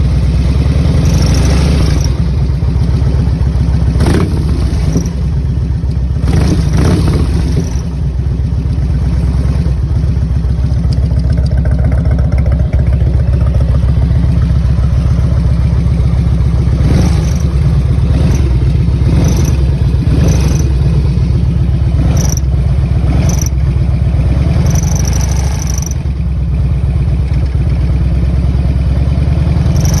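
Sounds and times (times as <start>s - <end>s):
motorcycle engine running: 0.0s - 30.0s
short chirp: 24.6s - 26.0s.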